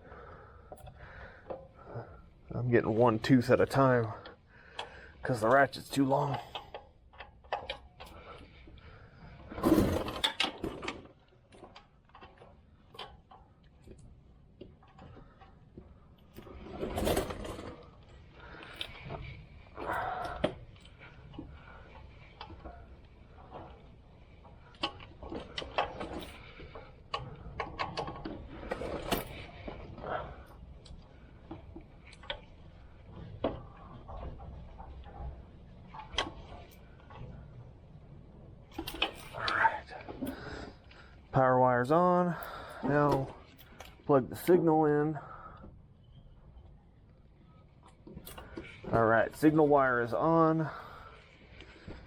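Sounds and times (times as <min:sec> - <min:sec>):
tool clunk and body rustle: 0:09.4 - 0:37.4.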